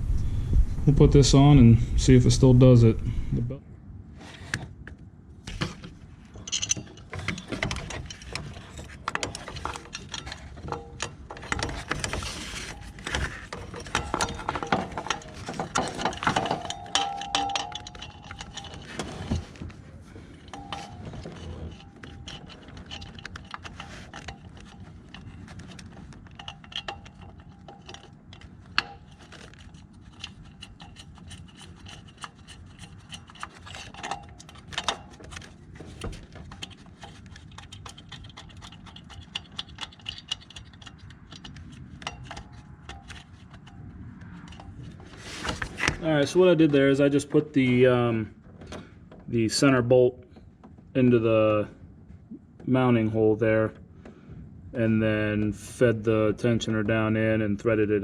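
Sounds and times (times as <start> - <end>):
metal ringing: 9.2 - 19.6, 20.4 - 25.5
metallic clicks and clinks: 12.8 - 19.0, 20.4 - 35.5.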